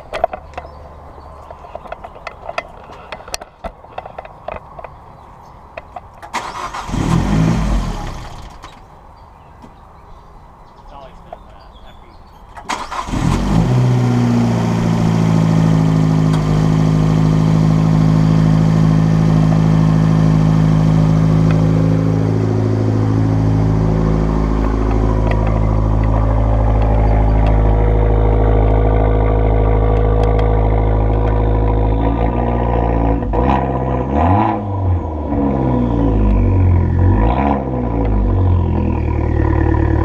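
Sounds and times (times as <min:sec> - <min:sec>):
car engine starting and idling: 0:06.1 - 0:08.9, 0:12.5 - 0:40.0.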